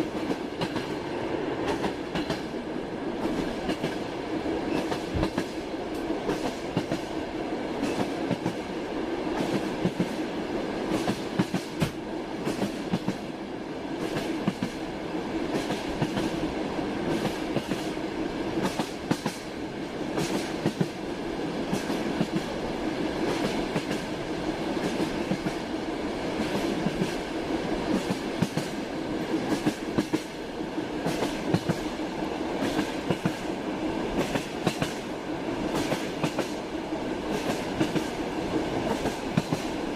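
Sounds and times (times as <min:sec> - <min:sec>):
train wheels clattering on track: 0:00.0 - 0:02.6, 0:03.2 - 0:14.8, 0:15.4 - 0:39.9
train running hum: 0:00.0 - 0:39.9.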